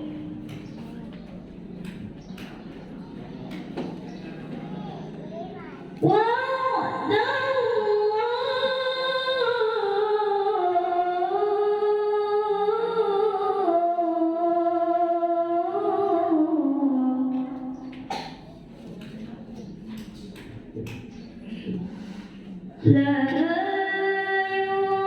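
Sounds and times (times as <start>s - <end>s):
girl reciting melodically: 4.2s - 18.1s, 22.8s - 25.0s.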